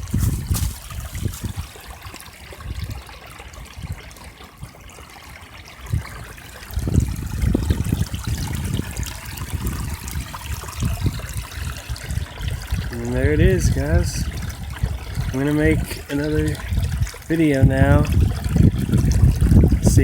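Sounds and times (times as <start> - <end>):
low rumbles on microphone: 0.0 - 1.7, 5.9 - 20.0
stream trickling: 0.0 - 20.0.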